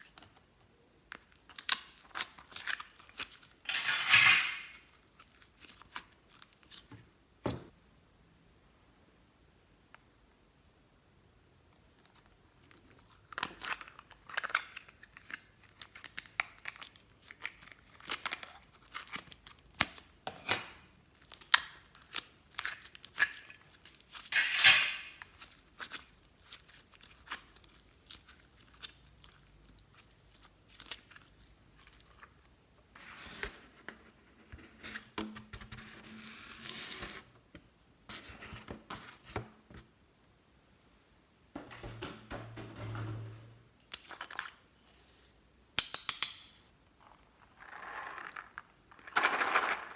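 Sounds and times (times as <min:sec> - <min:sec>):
slime rustling: 0:01.2 - 0:03.6, 0:04.7 - 0:06.9, 0:21.0 - 0:24.3, 0:25.2 - 0:32.5.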